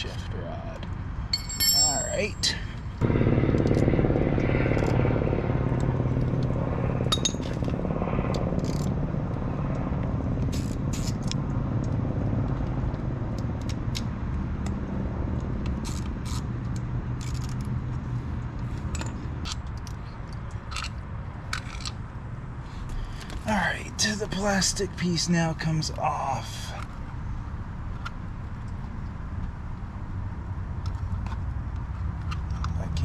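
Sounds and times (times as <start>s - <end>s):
steady low hum: 0.0s - 30.8s
hand tools clicking and scraping: 1.3s - 2.8s.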